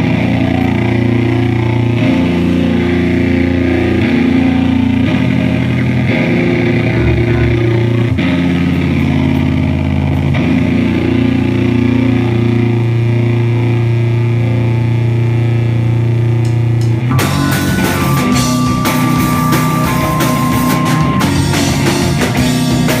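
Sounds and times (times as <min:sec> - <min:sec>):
rock band playing loud: 0:00.0 - 0:13.3, 0:16.7 - 0:23.0
distorted guitar and bass chord: 0:00.0 - 0:23.0
high steady tone: 0:06.2 - 0:08.3, 0:17.1 - 0:22.8
drums and crashing cymbals: 0:17.1 - 0:23.0.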